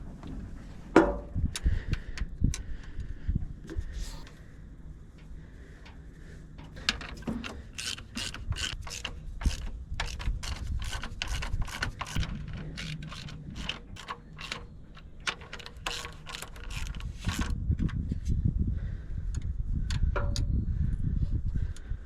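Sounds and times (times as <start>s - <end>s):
ratchet wrench clicking: 6.6s - 17.5s.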